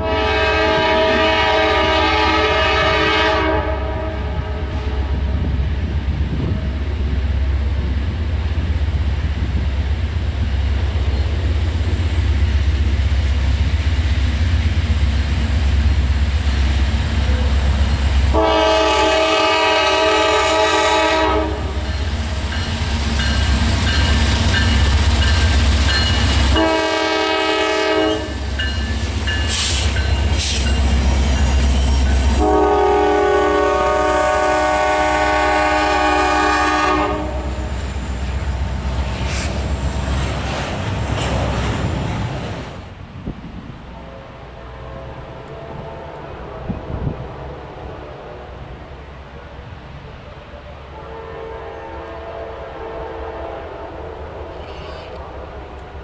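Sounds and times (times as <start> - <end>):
locomotive air horn: 0.0 - 5.3, 18.3 - 22.0, 26.4 - 28.4, 31.9 - 37.7, 44.0 - 47.2, 50.9 - 55.2
train rumble: 0.0 - 56.0
train wheel clatter: 21.5 - 32.5, 37.7 - 43.0.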